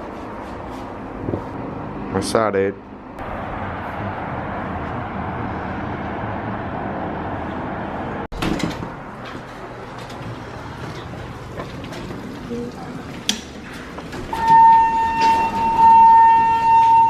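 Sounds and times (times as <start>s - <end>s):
car road and engine noise: 0.0s - 11.9s
low hum: 2.9s - 8.3s.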